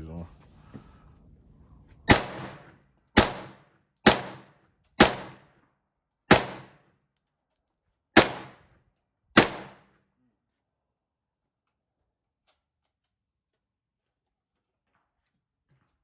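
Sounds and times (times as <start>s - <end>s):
single gunshots: 2.1s - 5.5s, 6.3s - 6.8s, 8.2s - 8.6s, 9.4s - 9.9s.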